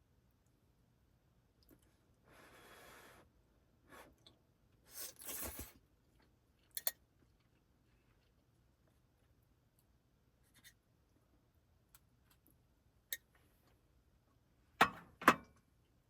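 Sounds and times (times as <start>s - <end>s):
brief scrape: 4.9s - 5.8s.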